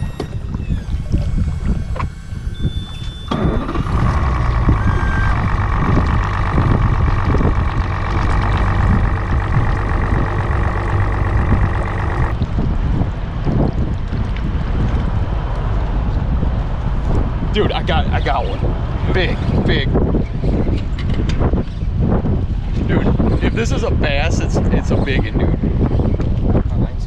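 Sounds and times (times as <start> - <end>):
boat motor whining: 0.0 - 12.4
wind rumble on microphone: 0.0 - 27.0.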